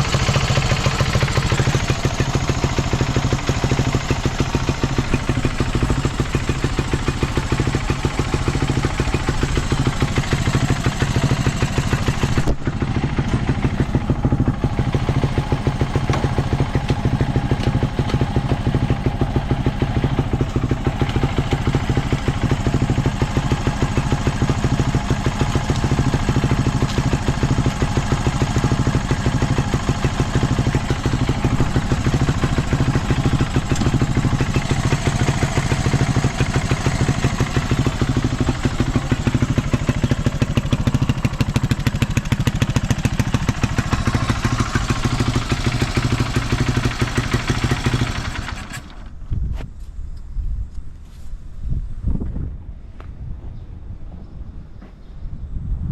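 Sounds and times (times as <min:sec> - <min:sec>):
motorcycle engine idling: 0:00.0 - 0:49.4
faint wind noise: 0:49.0 - 0:55.9.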